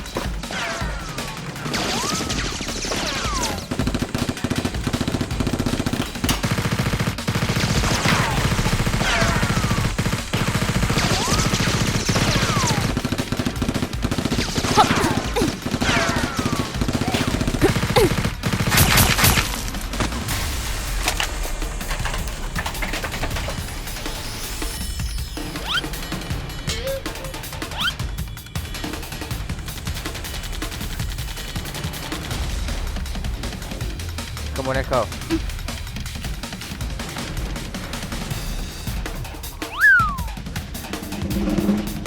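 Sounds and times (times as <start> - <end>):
rapid automatic gunfire: 0.1 - 24.4
whistling sweeps falling in pitch: 39.6 - 40.4.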